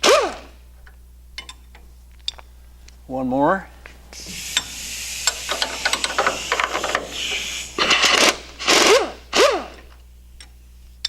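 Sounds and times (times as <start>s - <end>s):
air wrench spinning a bolt: 4.2s - 9.9s.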